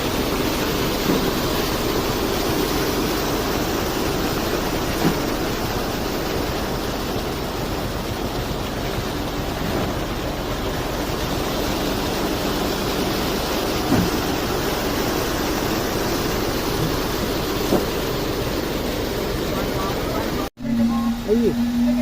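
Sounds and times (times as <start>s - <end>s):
concrete pouring: 0.0s - 21.6s
concrete mixer truck running: 0.0s - 22.0s.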